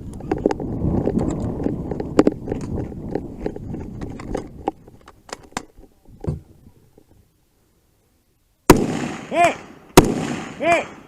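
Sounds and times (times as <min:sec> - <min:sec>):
gunshot: 0:08.7 - 0:11.0.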